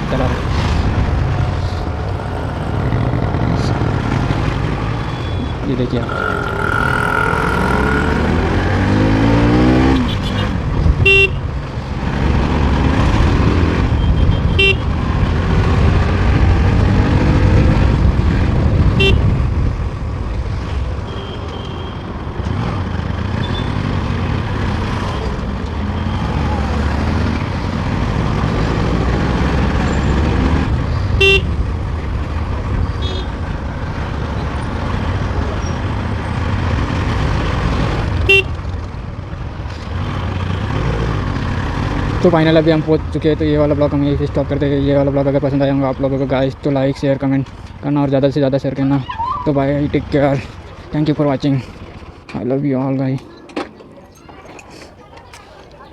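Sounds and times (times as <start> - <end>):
motorcycle engine revving: 0.0 - 43.0
vehicle horn beeps: 10.0 - 11.4, 14.0 - 14.9, 19.0 - 19.3, 21.0 - 22.1, 31.2 - 31.5, 38.3 - 38.6.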